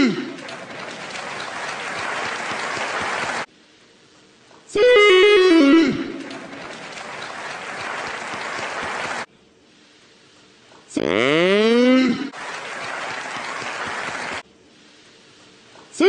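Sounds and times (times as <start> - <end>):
crowd cheering: 0.0 - 3.5, 5.5 - 9.3, 12.3 - 14.4.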